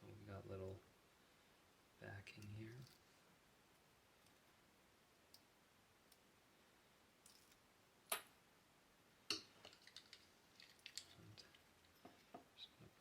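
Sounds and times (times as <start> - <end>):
small parts ticking and clicking: 9.3 - 12.4.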